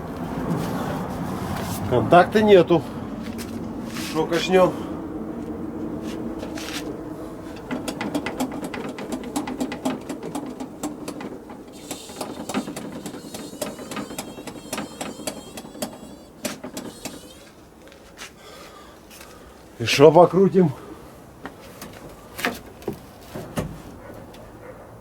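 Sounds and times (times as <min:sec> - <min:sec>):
hand pump clicking strokes: 0:07.5 - 0:18.2.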